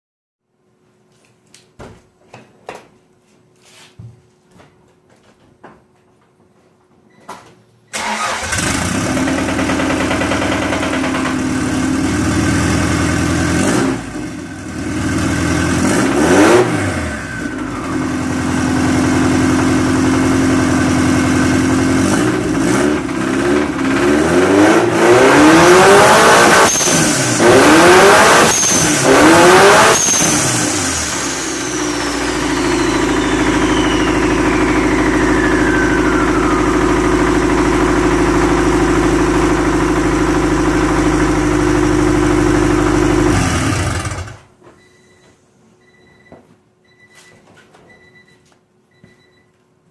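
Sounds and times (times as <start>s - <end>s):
engine with rod knock revving: 8.8s - 12.4s, 21.9s - 31.1s.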